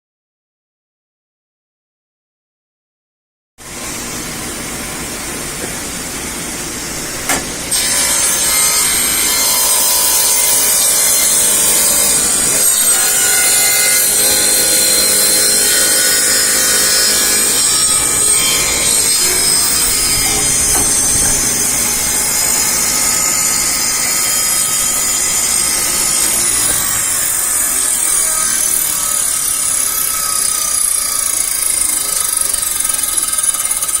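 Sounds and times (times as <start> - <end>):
table saw whining: 3.7 - 34.0
saw blade cutting wood: 7.0 - 34.0
saw switch click: 7.2 - 7.7.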